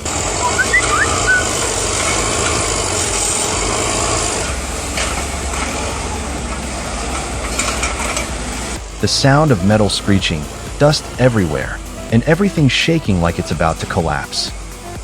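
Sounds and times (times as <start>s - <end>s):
heavy machine engine clattering: 0.0s - 11.6s
high metal squeals: 0.2s - 8.8s.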